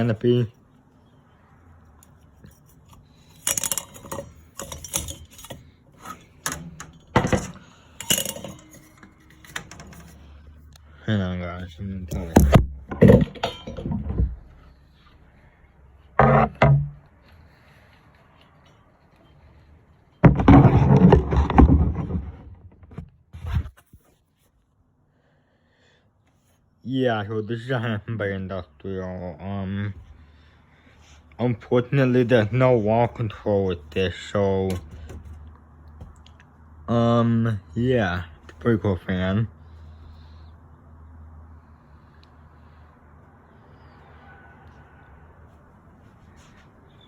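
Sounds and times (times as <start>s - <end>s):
metal fan parts knocking and rattling: 1.9s - 10.8s, 12.0s - 15.1s, 16.2s - 17.1s, 34.6s - 36.3s
scraping and clattering: 2.0s - 10.8s, 12.1s - 15.0s, 16.2s - 17.1s, 20.2s - 24.0s.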